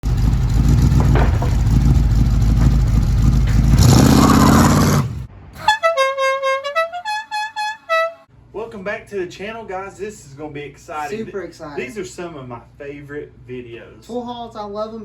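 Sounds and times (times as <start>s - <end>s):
engine rumbling: 0.0s - 6.8s
horn playing a tune: 5.6s - 8.3s.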